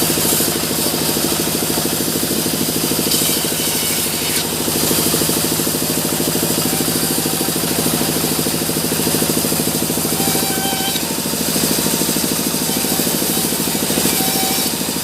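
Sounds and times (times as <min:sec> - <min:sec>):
sawmill machinery engine running: 0:00.0 - 0:15.0.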